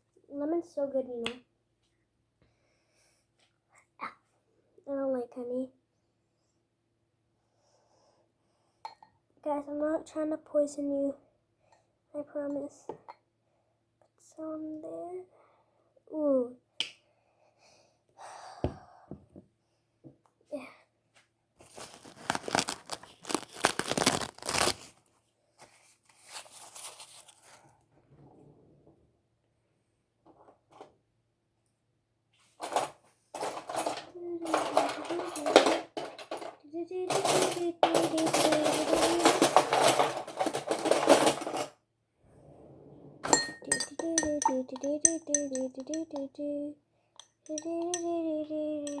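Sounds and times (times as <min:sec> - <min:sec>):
crinkling handling noise: 0:21.6 - 0:27.7
spoon clinking in glass: 0:43.3 - 0:46.3, 0:47.2 - 0:48.1.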